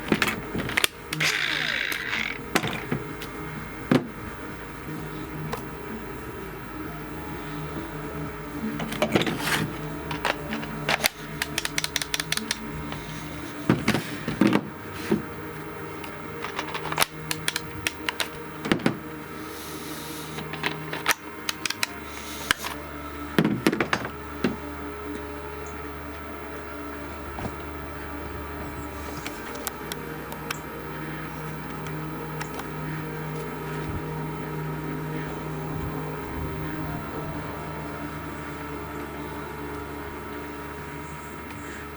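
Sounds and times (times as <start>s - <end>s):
low motor hum: 0.0s - 41.9s
sharp clicks: 10.1s - 13.0s, 16.0s - 18.4s, 20.4s - 22.8s.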